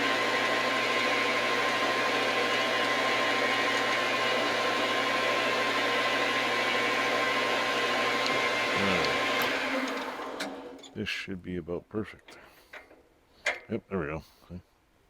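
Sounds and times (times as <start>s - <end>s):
metal lathe running with whine: 0.0s - 10.8s.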